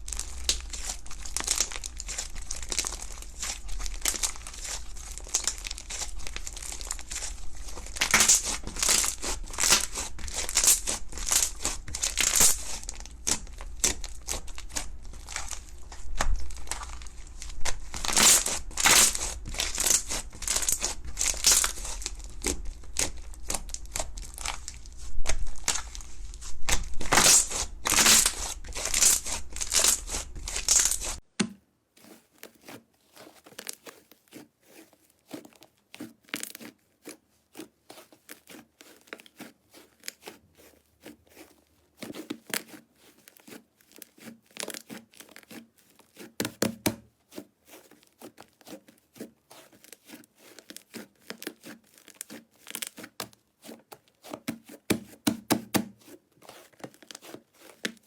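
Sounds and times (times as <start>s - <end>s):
slime squished crackling and popping: 0.0s - 31.2s.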